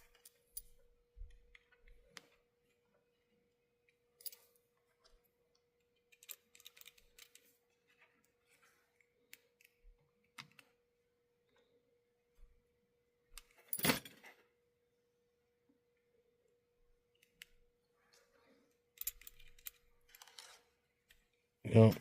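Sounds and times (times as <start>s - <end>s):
small clicks and taps of parts: 3.8s - 10.8s.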